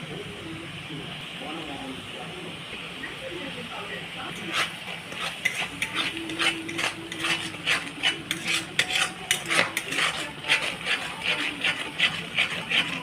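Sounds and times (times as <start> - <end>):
metal spoon scraping a pot: 4.3 - 13.0.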